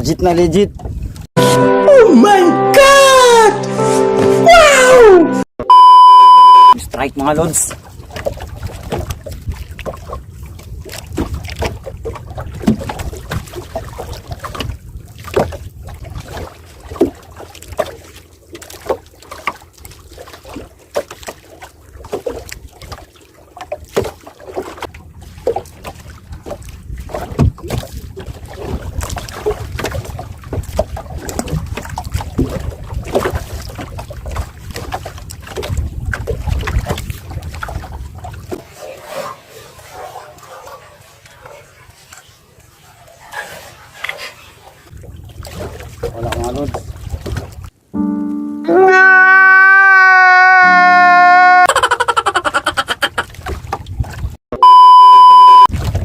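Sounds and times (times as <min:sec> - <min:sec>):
wind buffeting microphone: 0:26.3 - 0:38.6.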